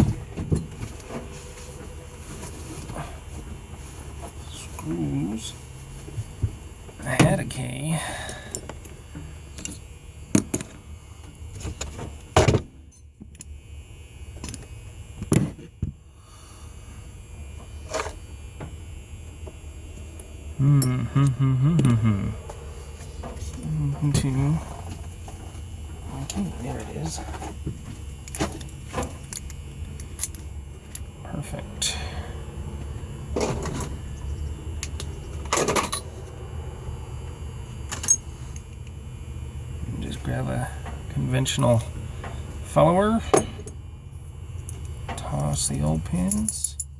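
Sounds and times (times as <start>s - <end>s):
low steady hum: 0.0s - 46.9s
murmur of voice: 20.6s - 22.4s.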